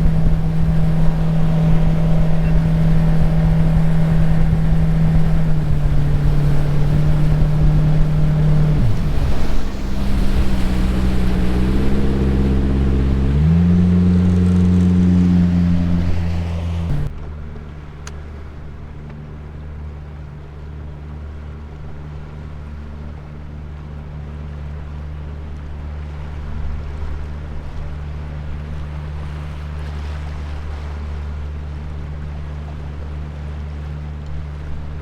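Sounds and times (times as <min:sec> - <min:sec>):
wind noise: 0:00.0 - 0:17.1
boat motor running: 0:00.0 - 0:35.0
water noise: 0:00.0 - 0:35.0.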